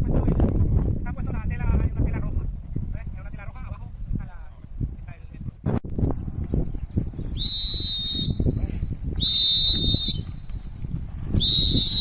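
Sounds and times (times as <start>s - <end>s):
rustling and movement: 8.4s - 12.0s.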